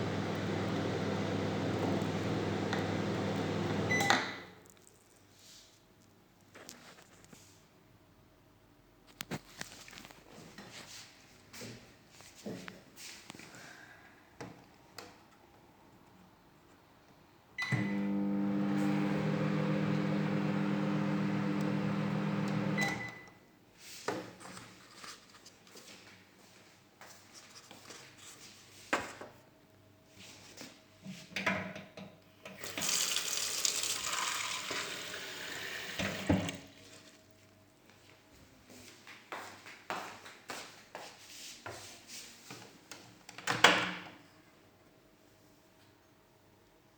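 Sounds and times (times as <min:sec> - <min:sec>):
microwave oven humming: 0:00.0 - 0:04.1, 0:17.6 - 0:23.2
microwave beep: 0:00.0 - 0:04.4, 0:17.6 - 0:23.4
water running from a tap: 0:32.6 - 0:36.2.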